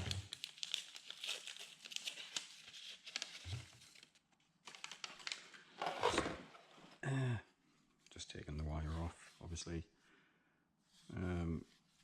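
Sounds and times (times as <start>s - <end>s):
plastic packaging crinkling and tearing: 0.0s - 5.7s.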